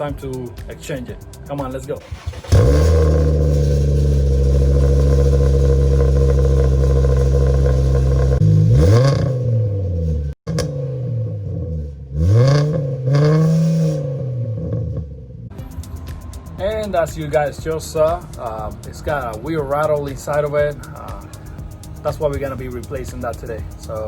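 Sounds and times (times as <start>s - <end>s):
car engine idling and revving: 0.0s - 24.0s
loose muffler rattling: 1.7s - 15.5s.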